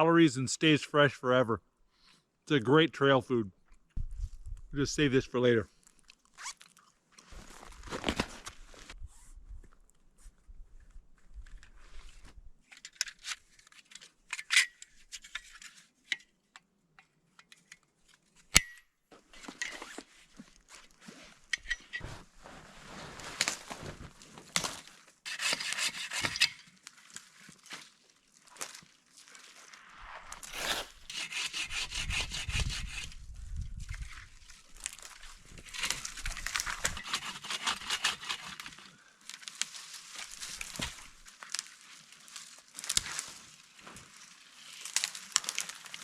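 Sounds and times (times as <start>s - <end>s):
rustling and crinkling: 7.1s - 9.0s, 21.9s - 24.9s, 27.6s - 31.1s.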